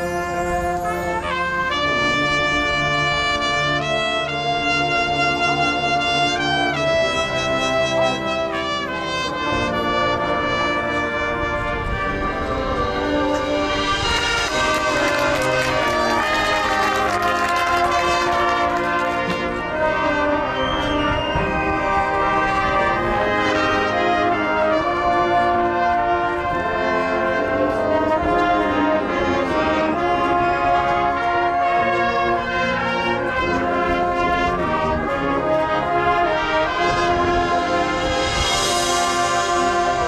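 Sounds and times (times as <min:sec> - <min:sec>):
brass band sustaining chords: 0:00.0 - 0:40.0
drumline percussion: 0:12.9 - 0:23.4.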